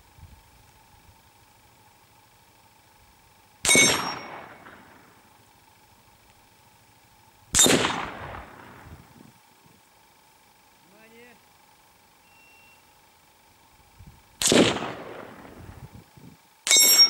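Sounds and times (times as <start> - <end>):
bullets hitting steel gong targets: 3.6 - 4.8, 16.7 - 17.0.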